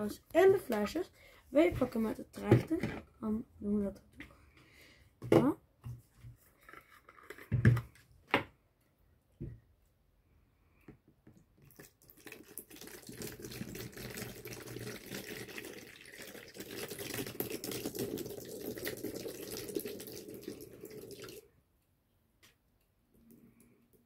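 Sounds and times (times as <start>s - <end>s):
water pouring: 11.6s - 21.5s.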